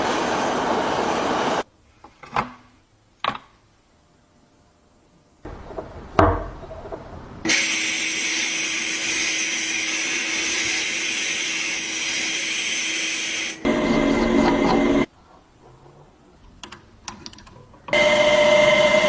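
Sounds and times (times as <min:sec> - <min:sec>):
power tool running: 0:07.5 - 0:15.1, 0:18.0 - 0:19.0.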